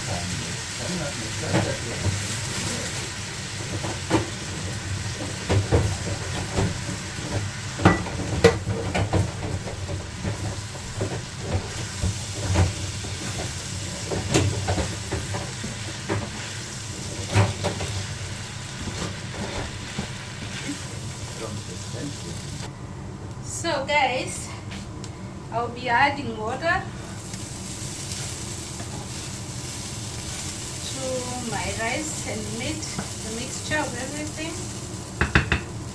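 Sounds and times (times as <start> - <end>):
rice and beef sizzling in a pot: 0.0 - 22.7, 26.9 - 35.9
spoon stirring and knocking a pot: 5.5 - 11.8, 35.2 - 35.8.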